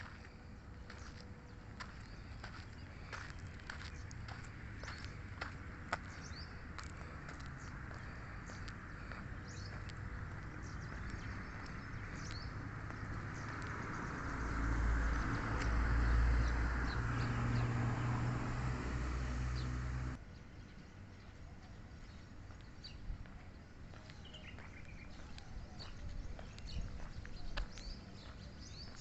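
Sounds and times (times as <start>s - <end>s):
small birds chirping: 0.0s - 18.1s, 19.4s - 29.0s
vehicle engine running: 17.2s - 20.2s.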